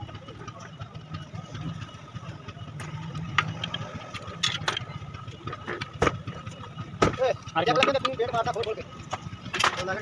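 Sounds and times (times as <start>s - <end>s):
engine running with low hum: 0.0s - 10.0s
sharp metallic clicks and knocks: 2.7s - 6.4s.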